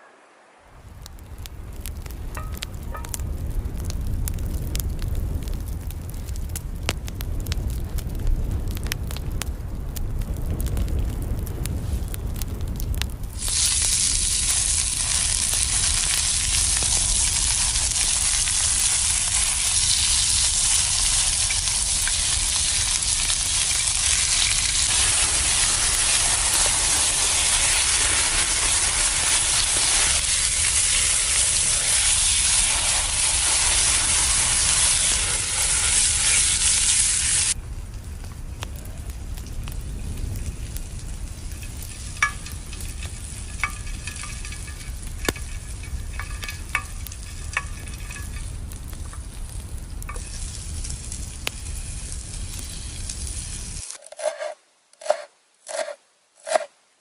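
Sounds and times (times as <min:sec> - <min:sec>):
food sizzling in hot oil: 0:02.0 - 0:05.0, 0:13.3 - 0:37.6, 0:39.4 - 0:54.0.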